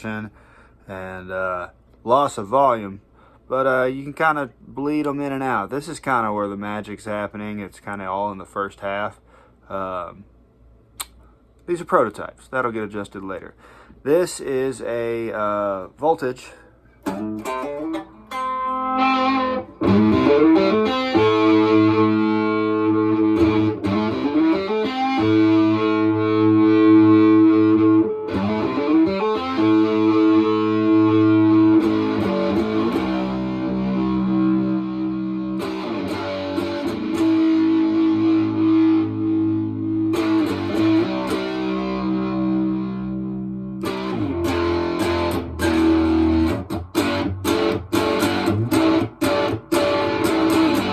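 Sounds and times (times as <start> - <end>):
distorted electric guitar chords: 17.0 - 50.9.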